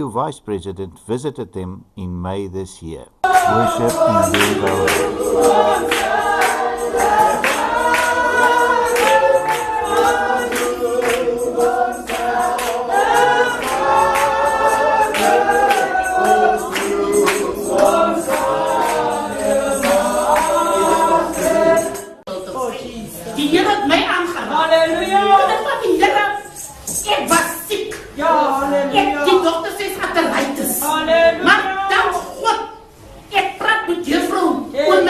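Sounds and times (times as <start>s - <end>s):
sharp percussive beats: 0.7s - 22.2s
group singing gospel in harmony: 3.2s - 32.5s, 34.1s - 35.0s.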